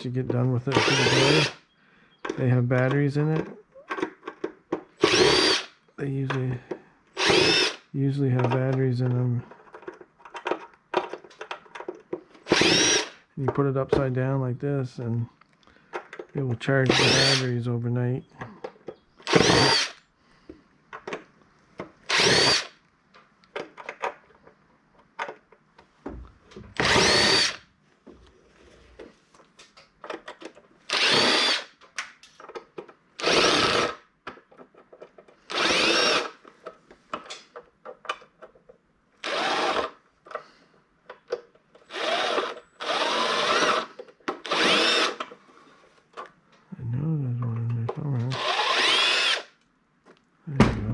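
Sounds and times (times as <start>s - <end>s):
power drill whine: 0.7s - 1.6s, 5.0s - 5.7s, 7.2s - 7.8s, 12.4s - 13.2s, 16.9s - 17.4s, 19.2s - 20.0s, 22.1s - 22.8s, 26.8s - 27.6s, 30.9s - 31.7s, 33.2s - 34.0s, 35.5s - 36.4s, 39.2s - 40.0s, 41.8s - 45.2s, 48.3s - 49.5s
plastic parts and screws rattling: 2.2s - 5.6s, 6.2s - 14.1s, 15.8s - 17.4s, 20.9s - 45.4s.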